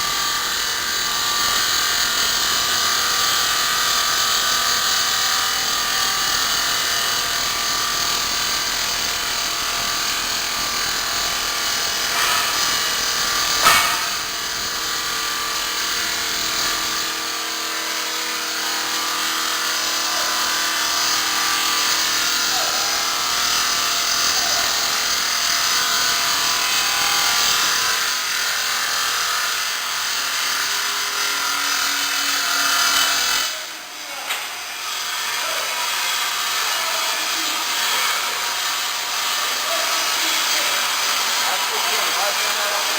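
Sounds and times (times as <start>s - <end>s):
stone-cutting saw running: 0.0s - 42.9s
sharp knock: 12.1s - 12.8s, 13.6s - 14.3s.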